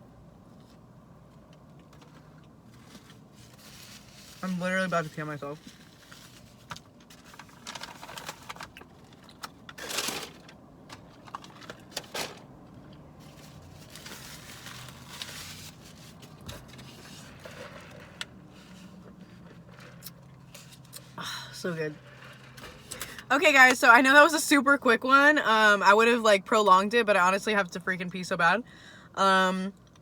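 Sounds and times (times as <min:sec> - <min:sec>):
paper wrappers crinkling: 0:13.2 - 0:16.8.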